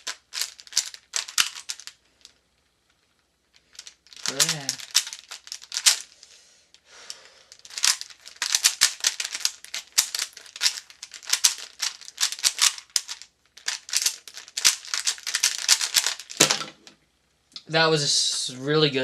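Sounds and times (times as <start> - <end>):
puzzle cube clicking: 0.0 - 1.9, 3.7 - 6.1, 7.1 - 16.6.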